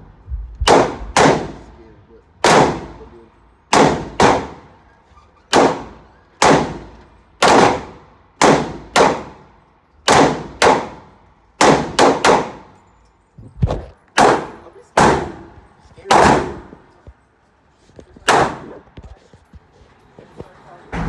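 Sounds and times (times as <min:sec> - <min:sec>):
gunshots with ringing echo: 0:00.6 - 0:01.8, 0:02.4 - 0:03.1, 0:03.7 - 0:04.8, 0:05.5 - 0:09.5, 0:10.1 - 0:12.8, 0:14.2 - 0:16.8, 0:18.3 - 0:18.8.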